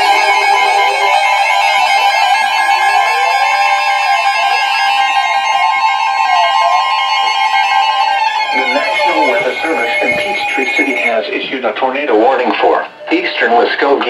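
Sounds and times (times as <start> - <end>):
steady high tone: 0.0 - 13.7
plucked guitar-like music: 8.2 - 11.2.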